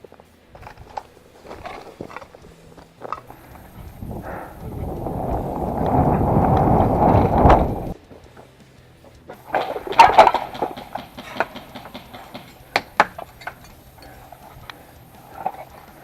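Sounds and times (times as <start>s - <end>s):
sharp clicks and knocks: 9.4s - 16.0s.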